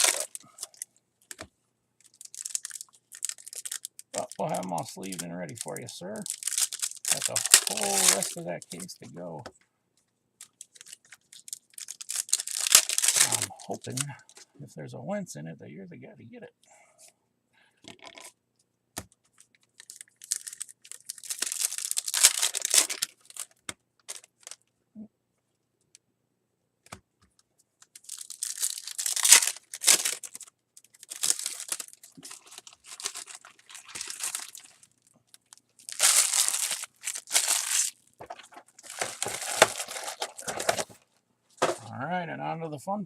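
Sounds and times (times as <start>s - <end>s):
card wrappers crinkling: 0.0s - 9.0s, 10.4s - 14.4s, 19.3s - 24.7s, 27.8s - 41.0s.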